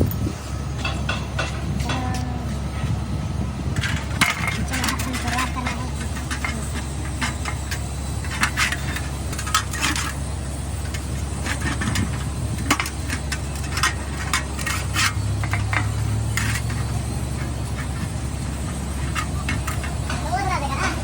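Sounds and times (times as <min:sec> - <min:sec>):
metal tools clinking and scraping: 0:00.0 - 0:02.9, 0:03.7 - 0:21.0
low machine hum: 0:00.0 - 0:21.0.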